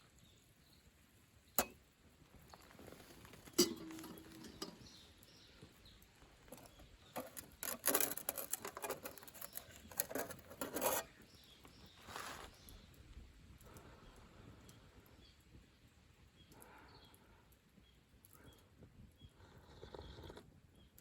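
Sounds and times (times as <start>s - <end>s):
objects being handled: 2.6s - 5.0s, 6.5s - 11.2s.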